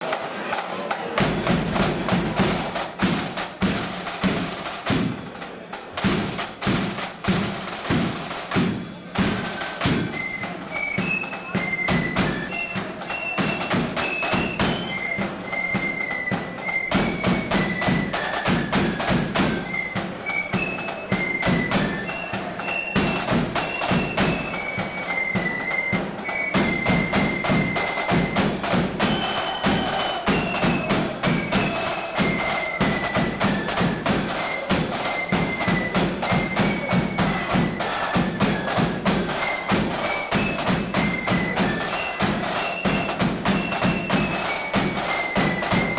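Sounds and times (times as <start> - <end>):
snare drumming: 0.0 - 45.9
flutes playing melody: 9.1 - 45.9.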